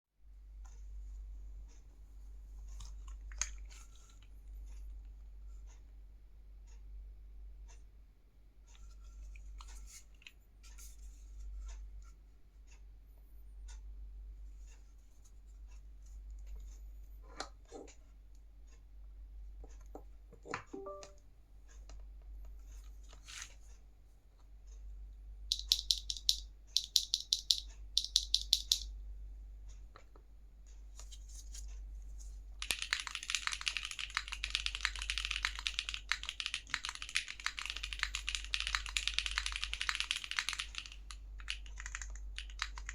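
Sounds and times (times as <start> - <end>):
mechanical keyboard typing: 25.5 - 28.9, 32.6 - 42.9.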